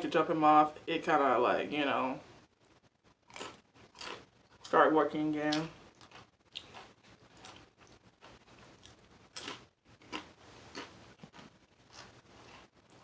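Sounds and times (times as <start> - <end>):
chewing sandwich: 3.2 - 4.7, 5.9 - 13.0.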